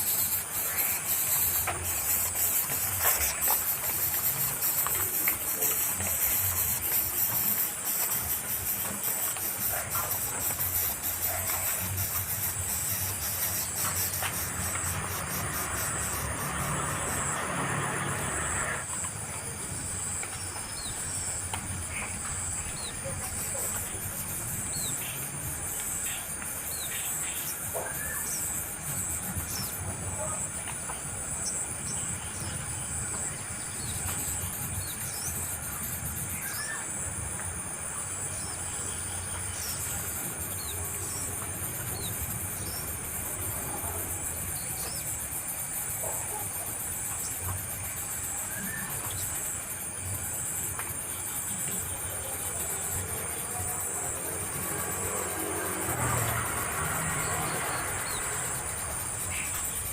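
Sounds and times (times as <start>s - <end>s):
high-pitched insect drone: 0.0s - 30.5s.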